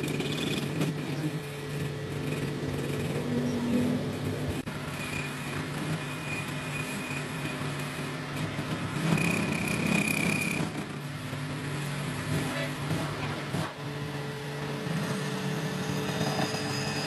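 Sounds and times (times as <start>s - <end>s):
thin high whine: 0.0s - 8.2s, 13.7s - 17.0s
machine humming: 0.0s - 17.0s.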